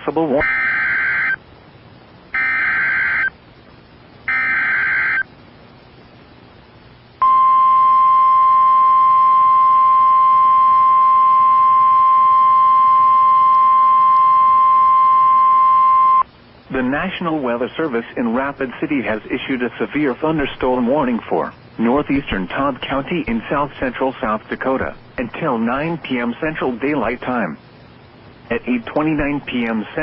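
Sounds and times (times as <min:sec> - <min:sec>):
screechy digital data bursts: 0:00.4 - 0:01.4, 0:02.3 - 0:03.3, 0:04.3 - 0:05.3
steady warning alarm tone: 0:00.4 - 0:01.4, 0:02.3 - 0:03.4, 0:04.3 - 0:05.3.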